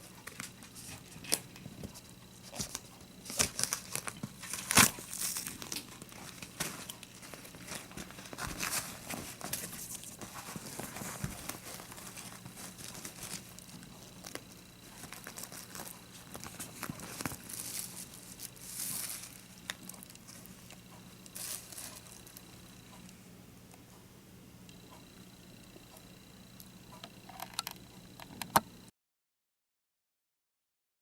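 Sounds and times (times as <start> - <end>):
crinkling and tearing rustles: 0.2 - 20.8.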